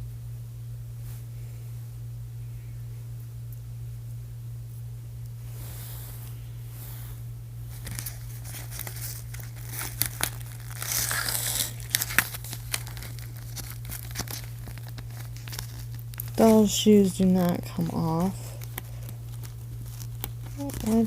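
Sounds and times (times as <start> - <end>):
steady low hum: 0.0 - 21.0
packaging crinkling and tearing: 7.7 - 21.0.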